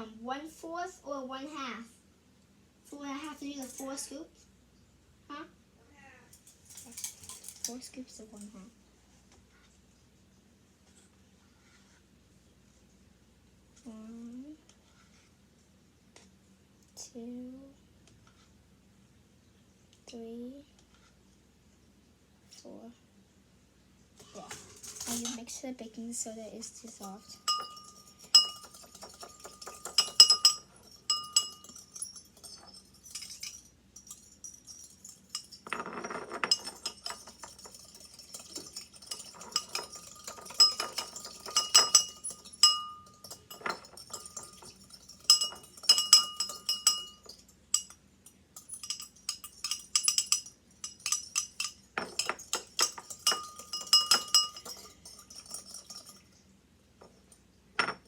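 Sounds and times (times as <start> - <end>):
fork clinking against bowl: 27.1 - 56.2.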